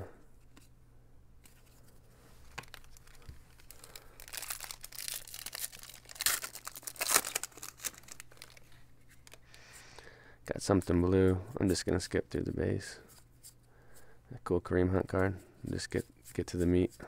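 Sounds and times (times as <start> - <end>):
plastic wrapper crinkling and tearing: 2.5 - 9.5.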